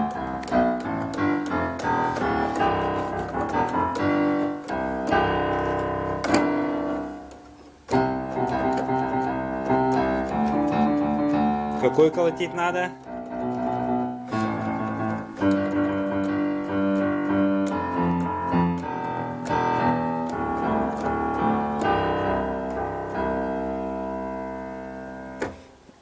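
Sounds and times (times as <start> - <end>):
piano music with held chords: 0.0 - 26.0.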